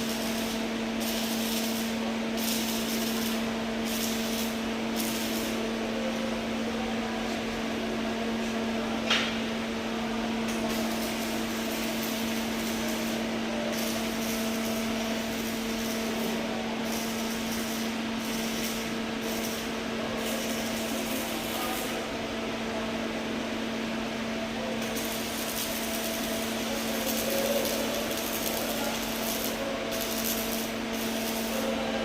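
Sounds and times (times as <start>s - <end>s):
welding arc hissing and crackling: 0.0s - 6.4s, 10.4s - 22.1s, 24.6s - 32.0s
welding machine hum: 0.0s - 32.0s.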